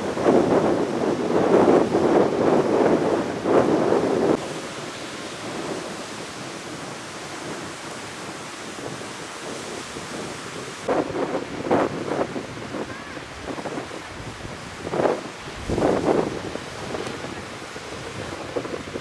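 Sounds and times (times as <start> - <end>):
sea surf pounding beach: 0.0 - 19.0
wind buffeting microphone: 0.0 - 19.0.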